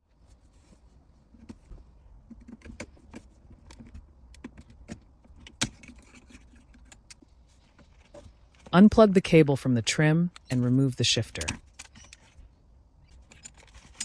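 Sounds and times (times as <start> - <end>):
pliers clicking and scraping metal: 10.3 - 12.4.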